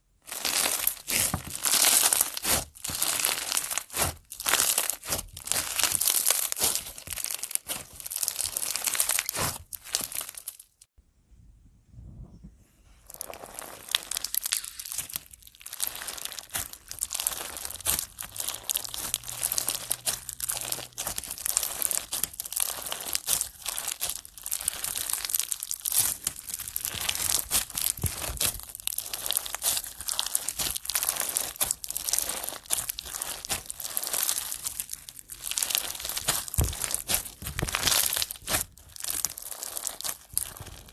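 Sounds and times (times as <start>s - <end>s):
slime crackling and popping: 0.2s - 10.9s, 13.1s - 40.9s.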